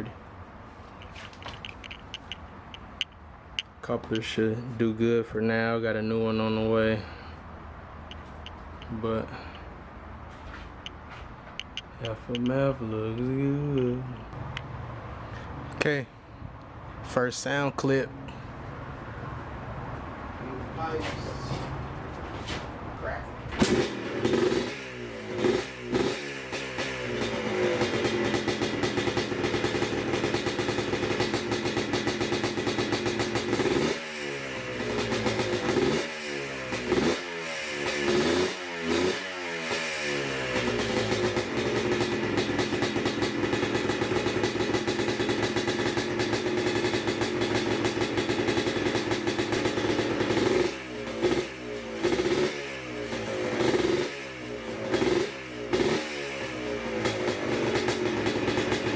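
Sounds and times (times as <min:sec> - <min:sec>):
two-stroke engine revving: 0:23.6 - 0:58.9.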